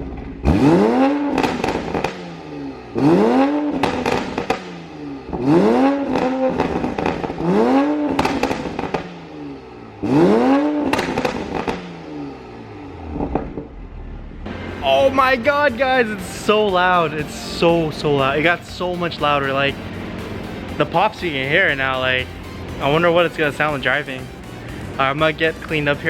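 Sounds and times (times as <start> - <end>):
exhaust pops and crackles: 0.0 - 2.4, 3.5 - 9.2, 10.8 - 11.9, 13.1 - 13.9
car engine revving: 0.0 - 26.0.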